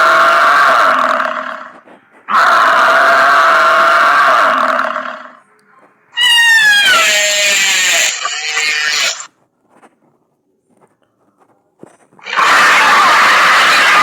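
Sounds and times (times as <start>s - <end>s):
animal-like creature calls: 6.2s - 9.3s, 12.2s - 14.0s.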